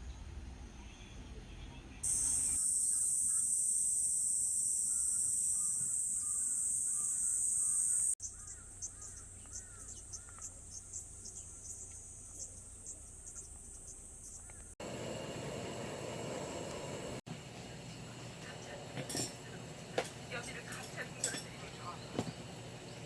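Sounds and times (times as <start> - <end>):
insects trilling: 2.0 - 15.2.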